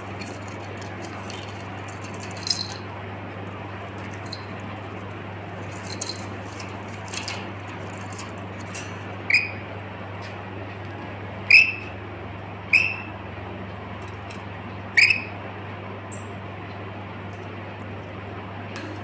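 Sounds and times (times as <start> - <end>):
steady low hum: 0.0 - 19.0
parrot squeaky calls: 9.3 - 9.6, 11.5 - 11.9, 12.7 - 13.1, 15.0 - 15.4.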